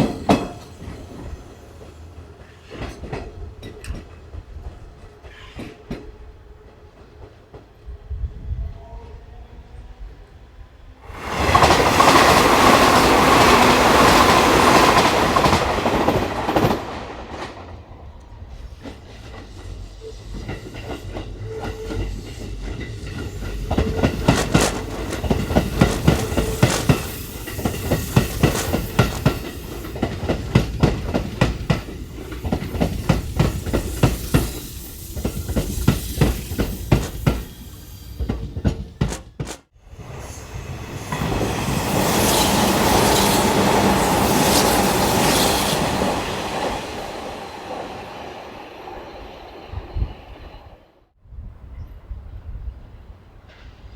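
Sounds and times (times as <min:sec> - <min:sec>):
train rushing past: 0:10.0 - 0:51.2
train wheels clacking over rail joints: 0:18.8 - 0:39.8.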